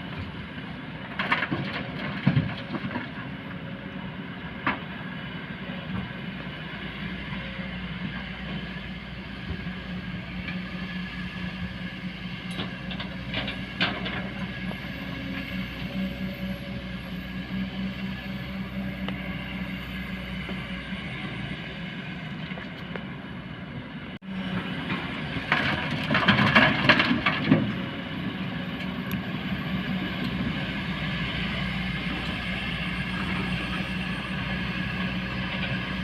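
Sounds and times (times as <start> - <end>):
excavator diesel engine running: 0.0 - 36.0
clattering and scraping: 25.5 - 27.8.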